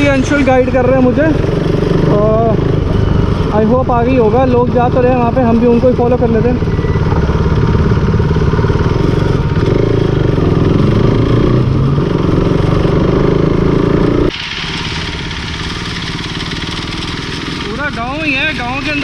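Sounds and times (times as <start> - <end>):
motorcycle engine running: 0.0 - 19.0
road noise: 0.0 - 19.0.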